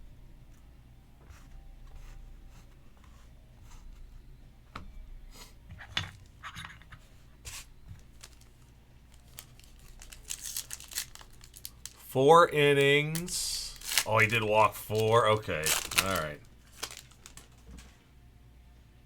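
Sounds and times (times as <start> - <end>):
card packaging rustling and scraping: 7.0 - 18.0.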